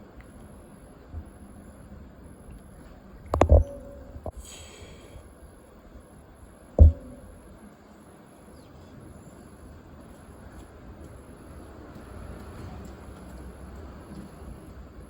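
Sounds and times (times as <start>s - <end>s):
faint background noise: 0.0s - 15.0s
low thump: 6.8s - 7.5s.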